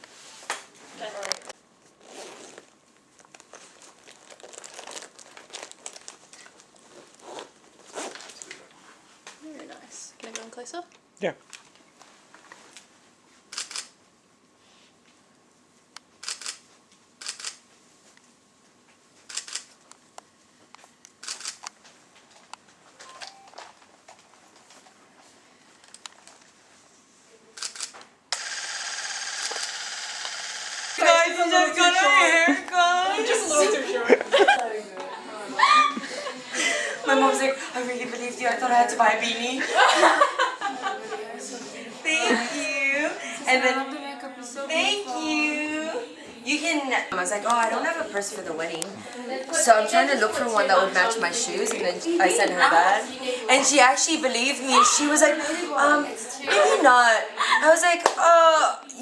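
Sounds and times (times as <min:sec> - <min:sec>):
crinkling and rustling: 0:00.9 - 0:08.7.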